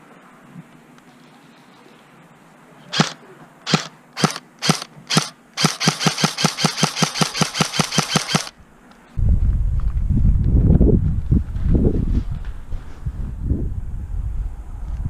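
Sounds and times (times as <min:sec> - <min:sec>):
airsoft rifle shots: 0:02.9 - 0:08.6.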